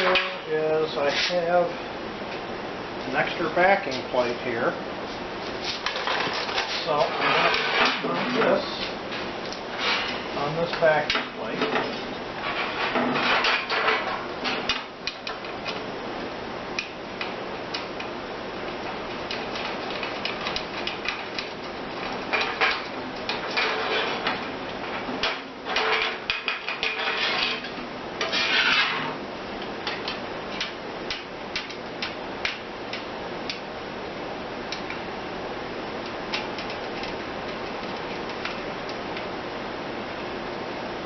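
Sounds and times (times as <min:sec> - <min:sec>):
thin metal scraping against metal: 0:05.6 - 0:08.8, 0:09.7 - 0:10.2, 0:22.3 - 0:24.4, 0:25.2 - 0:29.2.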